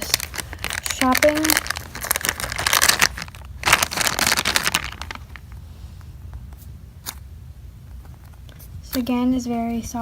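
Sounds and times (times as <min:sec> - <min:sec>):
plastic packaging crinkling: 0:00.0 - 0:05.6.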